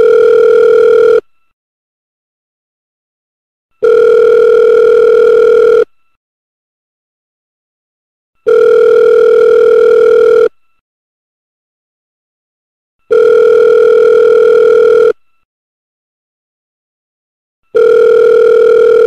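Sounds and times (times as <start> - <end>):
telephone ringing: 0.0 - 1.2, 3.8 - 5.8, 8.5 - 10.5, 13.1 - 15.2, 17.8 - 19.0.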